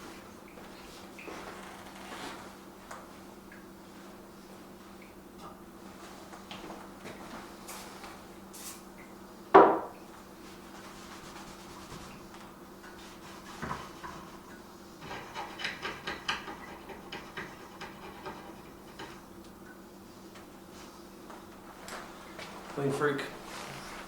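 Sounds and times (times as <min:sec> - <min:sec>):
hard objects knocking: 0:09.6 - 0:09.9.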